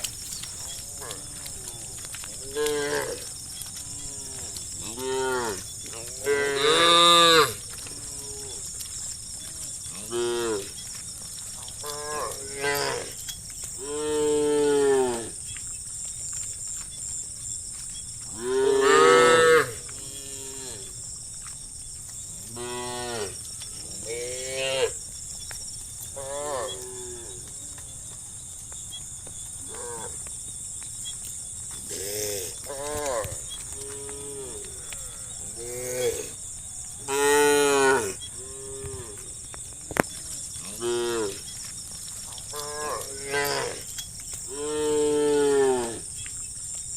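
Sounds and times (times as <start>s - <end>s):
cows mooing: 3.9s - 8.6s, 18.4s - 20.9s.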